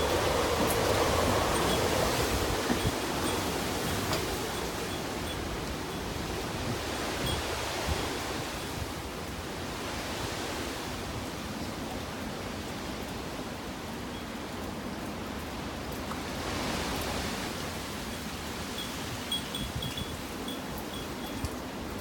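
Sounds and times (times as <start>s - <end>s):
strong wind rushing: 0.0s - 8.6s
wind buffeting microphone: 0.0s - 11.3s, 16.2s - 21.5s.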